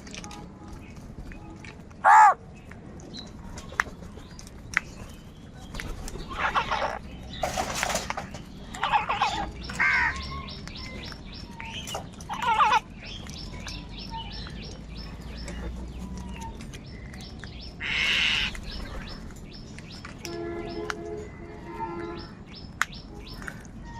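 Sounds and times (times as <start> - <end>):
small birds chirping: 0.0 - 23.9
crows cawing: 2.0 - 2.4, 8.8 - 10.2, 17.8 - 18.5.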